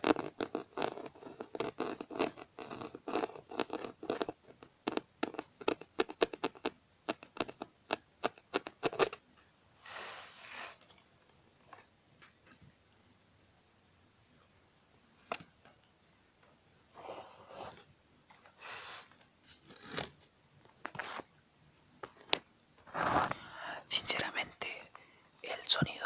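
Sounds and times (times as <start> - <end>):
rubbing scratching sound: 0.0 - 9.2.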